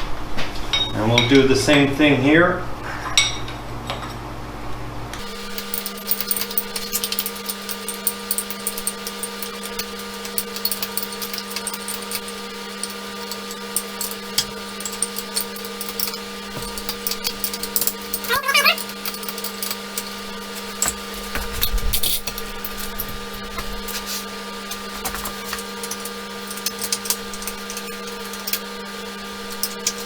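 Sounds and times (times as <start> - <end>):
power tool humming and rattling: 5.2 - 30.0.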